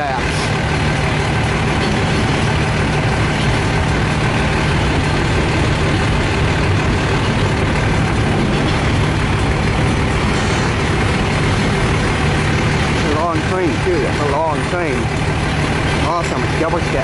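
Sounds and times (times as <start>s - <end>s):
freight train wheels rumbling: 0.0s - 17.0s.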